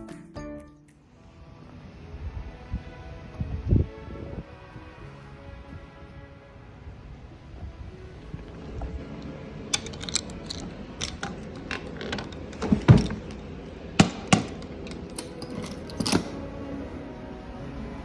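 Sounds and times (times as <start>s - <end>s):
objects clicking and knocking: 8.4s - 16.4s.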